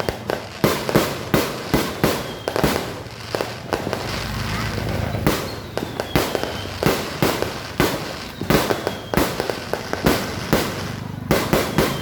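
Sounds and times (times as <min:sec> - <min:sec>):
aerial fireworks bursting: 0:00.0 - 0:12.0
faint falling whistles: 0:05.1 - 0:07.1, 0:07.9 - 0:09.6, 0:11.6 - 0:12.0.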